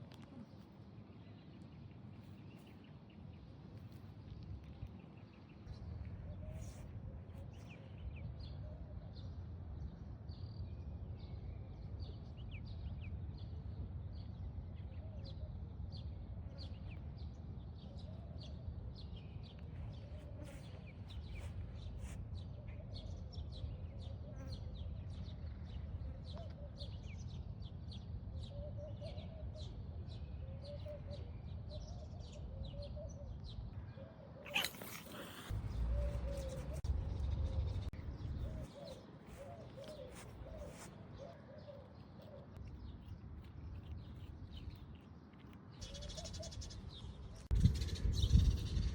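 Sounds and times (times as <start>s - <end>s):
small birds chirping: 14.8s - 48.9s
low outdoor rumble: 35.3s - 48.9s.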